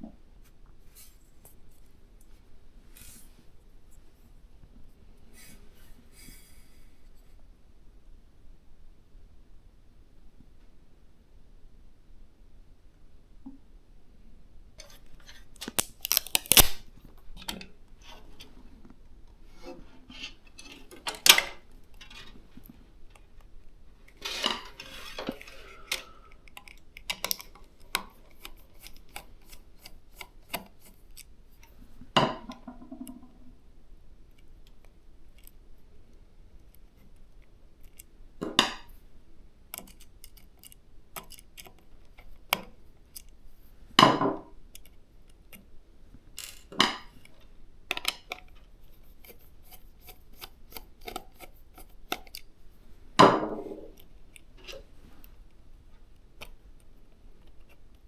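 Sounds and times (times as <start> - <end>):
scraping rustle: 24.0 - 26.4.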